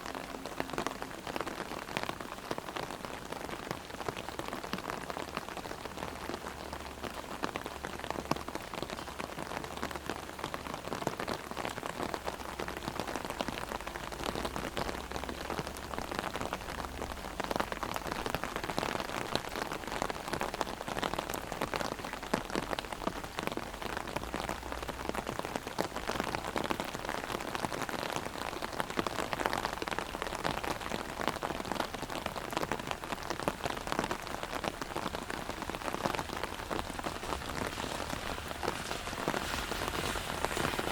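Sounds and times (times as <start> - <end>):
heavy rain on an umbrella: 0.0 - 40.9.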